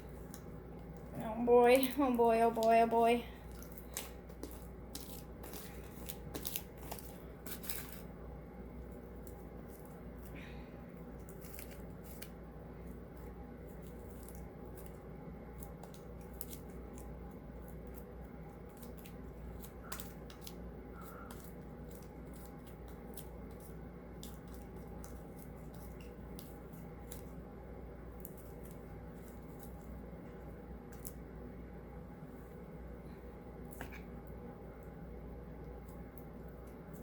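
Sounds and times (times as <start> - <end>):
steady low hum: 0.0 - 37.0
sticky slime clicking and crackling: 0.2 - 8.0.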